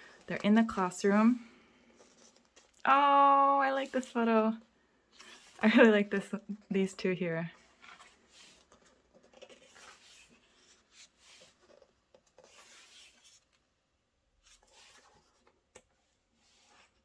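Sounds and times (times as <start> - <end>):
pages rustling and turning: 0.0 - 2.8, 3.7 - 4.2, 5.1 - 6.2, 7.6 - 13.6, 14.4 - 17.0.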